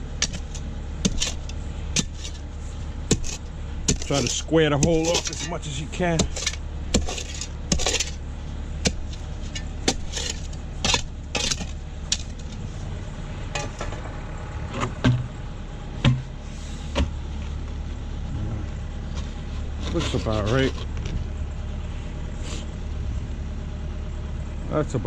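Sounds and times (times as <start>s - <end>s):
shovel chopping and scraping soil: 0.0s - 8.2s, 8.8s - 12.7s, 13.6s - 14.1s, 19.1s - 21.0s
steady low hum: 0.0s - 25.0s.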